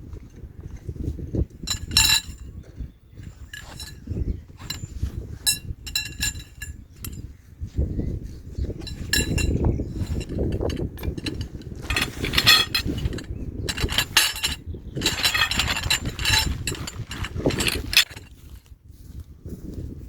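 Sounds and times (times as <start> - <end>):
metal objects clinking: 1.7 - 2.4, 3.2 - 4.9, 5.5 - 7.2, 8.8 - 18.6.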